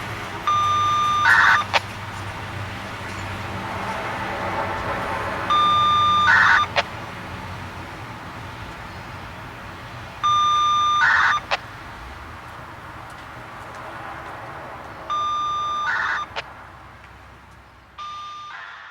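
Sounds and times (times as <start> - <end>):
radio scanner data bursts: 0.0 - 3.5, 5.4 - 7.0, 10.2 - 11.7, 15.1 - 16.5, 18.0 - 18.9.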